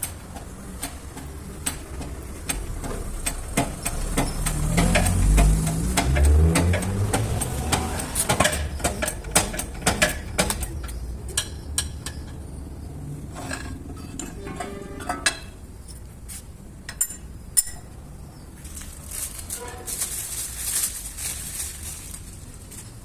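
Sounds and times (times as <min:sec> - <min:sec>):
metal tools clinking: 0:13.2 - 0:16.1.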